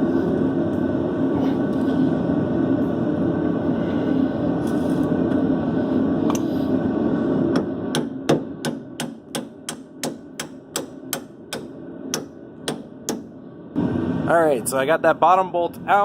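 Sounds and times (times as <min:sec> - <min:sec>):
loud steady rumble: 0:00.0 - 0:16.0
hammer striking metal bolt: 0:07.6 - 0:13.3.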